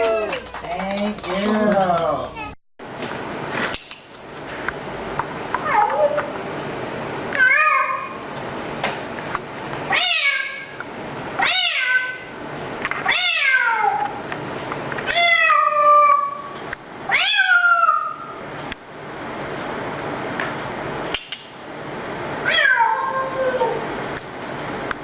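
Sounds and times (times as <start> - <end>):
cat meowing: 5.6 - 6.3, 7.4 - 8.2, 9.9 - 10.8, 11.4 - 12.3, 13.0 - 14.2, 15.1 - 18.3, 22.4 - 23.8.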